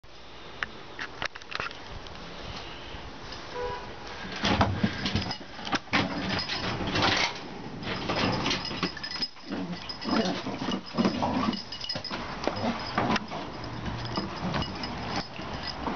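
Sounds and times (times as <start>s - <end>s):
dog barking and growling: 9.4s - 13.2s.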